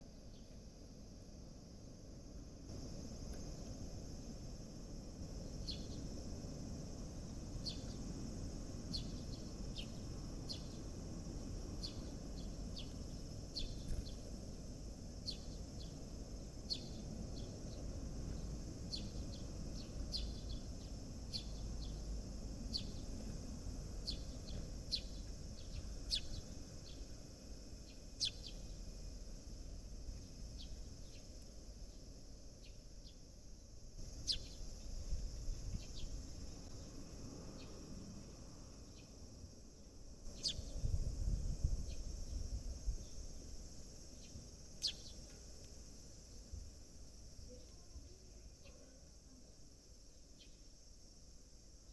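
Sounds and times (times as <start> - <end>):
sparrows chirping: 5.4 - 6.3, 7.5 - 8.2, 8.8 - 11.0, 11.8 - 14.4, 15.1 - 23.2, 24.0 - 28.8, 30.0 - 32.0, 34.1 - 36.9, 40.3 - 40.8, 44.2 - 45.3.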